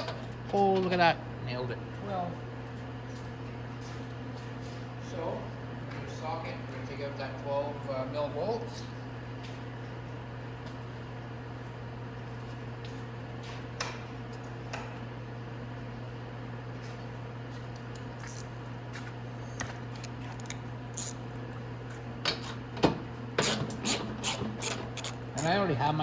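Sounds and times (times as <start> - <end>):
socket wrench clicking: 23.4 - 25.6.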